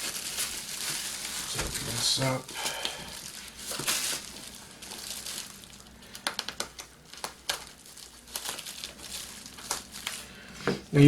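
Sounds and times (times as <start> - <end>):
packaging crinkling and rustling: 0.0 - 11.0
packaging clicks and snaps: 6.1 - 7.7.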